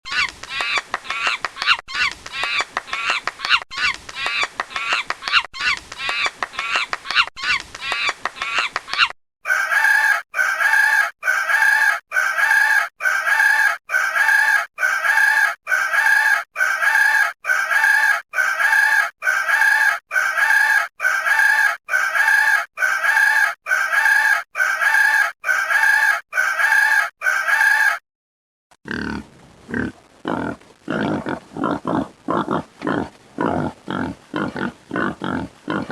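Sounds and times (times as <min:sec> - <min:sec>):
chicken call: 0:00.1 - 0:28.0.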